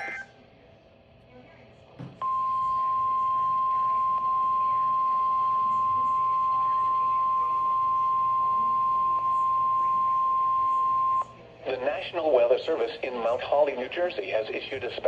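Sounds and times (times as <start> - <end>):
steady high alarm tone: 0.0 - 0.3, 2.2 - 11.3.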